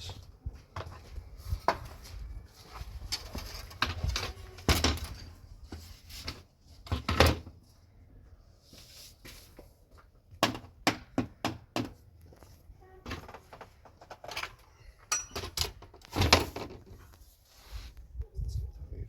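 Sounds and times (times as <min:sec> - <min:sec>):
hard objects knocking and thudding: 0:10.3 - 0:12.1.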